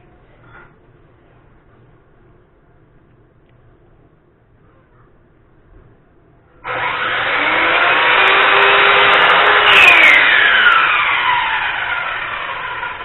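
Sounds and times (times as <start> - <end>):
saw blade winding down: 6.6 - 13.0
saw cutting wood: 6.6 - 13.0.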